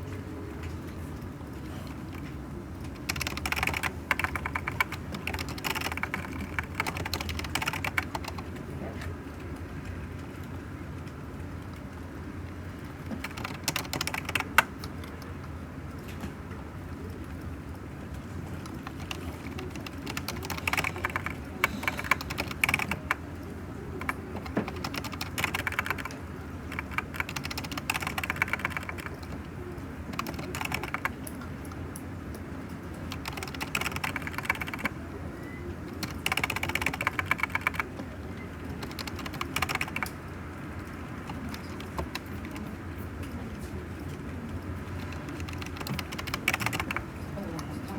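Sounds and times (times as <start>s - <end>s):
typing on a keyboard: 0.1s - 16.4s, 17.0s - 47.9s.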